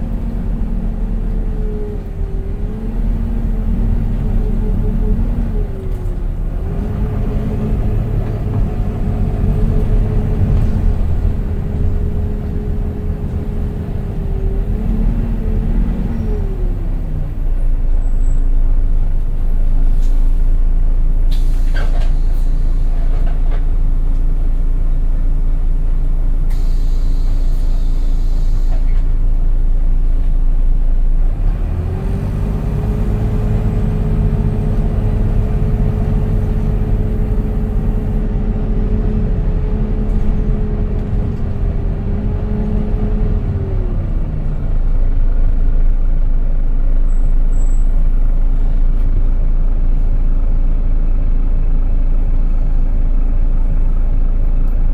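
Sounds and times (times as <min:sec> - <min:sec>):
bus drivetrain whine: 0:00.0 - 0:54.9
air hiss: 0:26.5 - 0:28.7.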